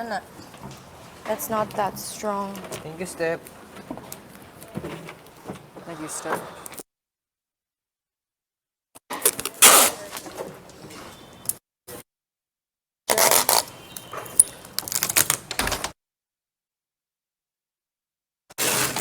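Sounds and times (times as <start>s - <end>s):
tape handling noise: 0.3s - 6.8s, 9.1s - 11.6s, 13.1s - 15.6s
packing tape pulled off roll: 9.1s - 10.4s, 13.1s - 15.6s, 18.6s - 19.0s.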